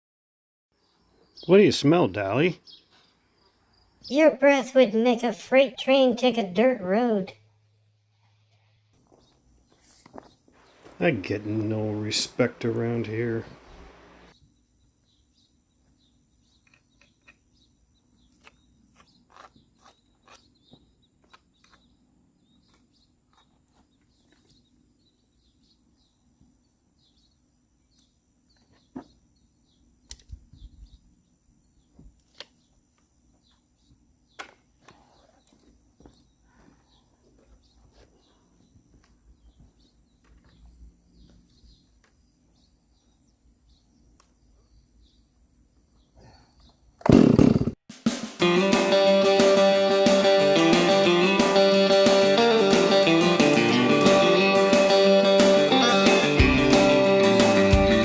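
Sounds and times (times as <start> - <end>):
faint bird chirps: 14.3 - 47.0.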